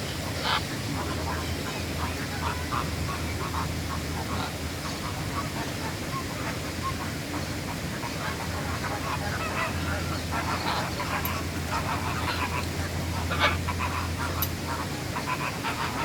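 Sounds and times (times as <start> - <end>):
steady low hum: 0.0 - 16.0
macaws squawking: 8.0 - 16.0.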